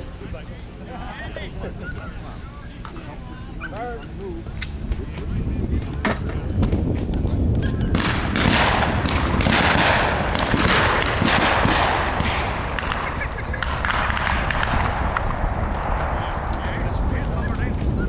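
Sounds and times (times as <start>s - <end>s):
steady rushing noise: 0.0s - 18.0s
shotgun shots: 7.9s - 17.2s.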